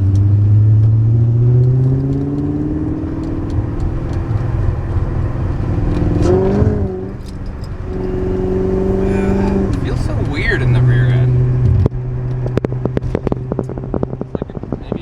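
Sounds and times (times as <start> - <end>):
car engine accelerating: 0.0 - 15.0.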